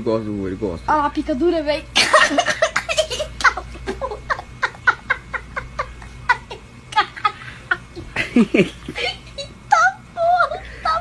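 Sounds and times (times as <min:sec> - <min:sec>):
person laughing hard: 0:02.1 - 0:09.6.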